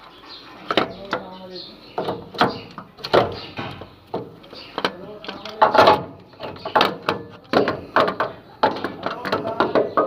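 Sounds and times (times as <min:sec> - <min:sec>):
hand tools and metal parts clacking: 0:02.0 - 0:10.0.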